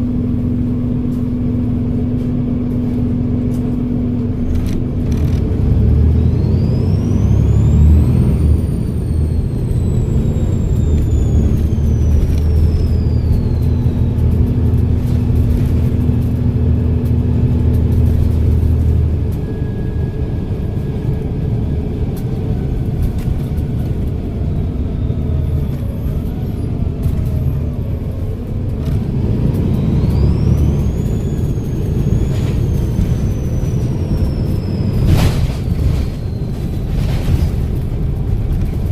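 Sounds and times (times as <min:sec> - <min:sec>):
diesel bus engine under load: 0:00.0 - 0:38.9
turbocharger whistle: 0:06.3 - 0:14.8, 0:29.6 - 0:36.8.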